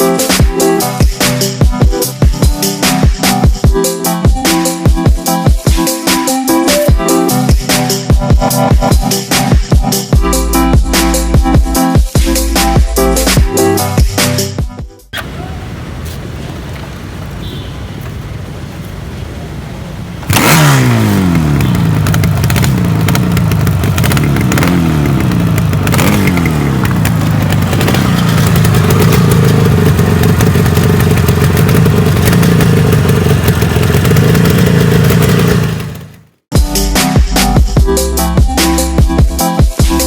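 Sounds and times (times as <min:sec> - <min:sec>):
motorcycle engine revving: 0:15.2 - 0:36.4.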